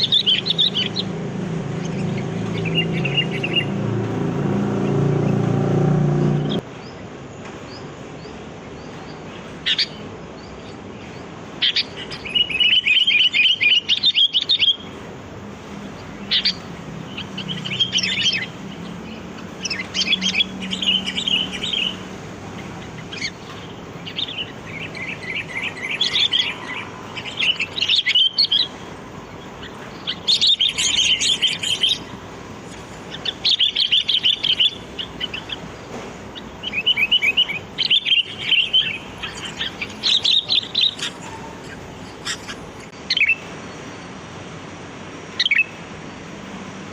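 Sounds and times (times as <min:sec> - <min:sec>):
bulbul song: 0:00.0 - 0:06.9, 0:15.8 - 0:44.0.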